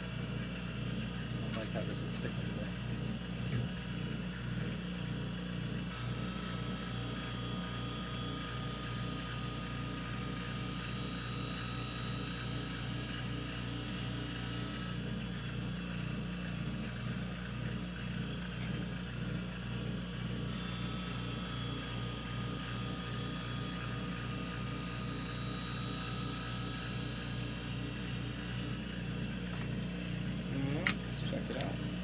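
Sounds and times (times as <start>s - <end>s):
sharpening machine motor hum: 5.9s - 15.5s, 20.3s - 31.0s.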